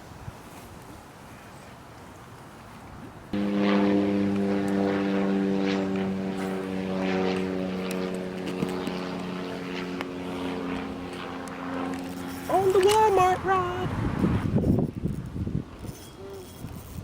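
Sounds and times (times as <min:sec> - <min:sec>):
low engine drone: 0:03.4 - 0:14.6.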